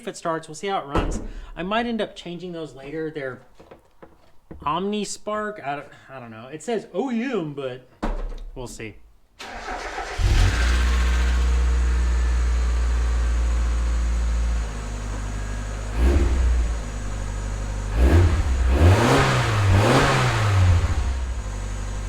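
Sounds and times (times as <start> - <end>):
car engine idling and revving: 9.5 - 22.0.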